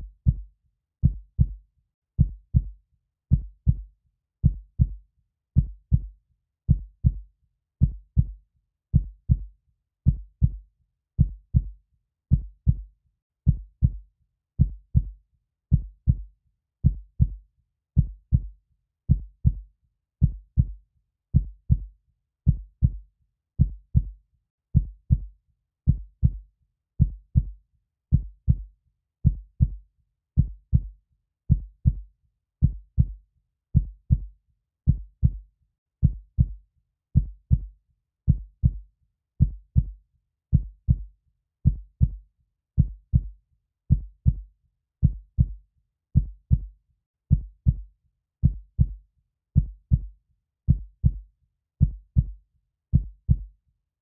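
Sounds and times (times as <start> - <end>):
heartbeat double thumps: 27.0 - 27.5, 28.1 - 28.6, 32.6 - 33.2, 33.8 - 34.3, 37.2 - 37.7, 38.3 - 38.8, 39.4 - 41.1, 41.7 - 42.2, 42.8 - 43.3, 43.9 - 44.4, 45.0 - 45.6, 46.2 - 46.7, 47.3 - 49.0, 49.6 - 50.1, 50.7 - 51.2, 51.8 - 52.4, 53.0 - 53.5.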